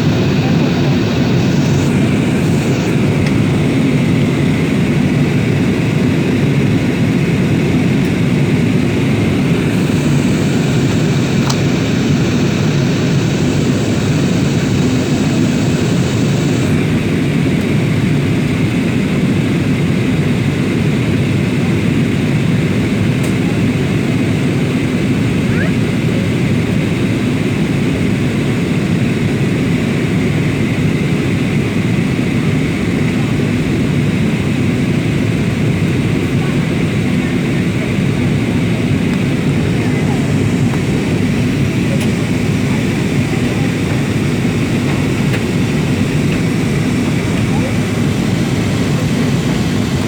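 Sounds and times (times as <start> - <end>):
airliner cabin rumble: 0.0 - 28.3, 29.1 - 50.0.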